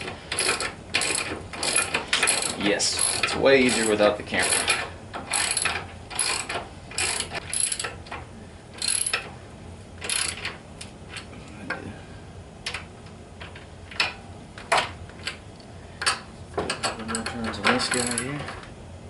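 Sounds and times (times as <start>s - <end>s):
ratchet wrench clicking: 0.3s - 7.9s, 8.8s - 9.2s, 10.0s - 10.5s, 17.1s - 18.3s.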